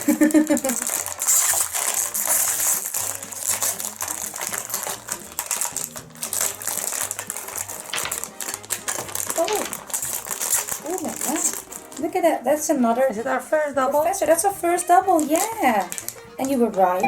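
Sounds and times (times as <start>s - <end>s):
small plastic pieces clattering: 0.0s - 12.0s, 15.1s - 16.6s
plastic foil bag crinkling: 0.0s - 17.0s.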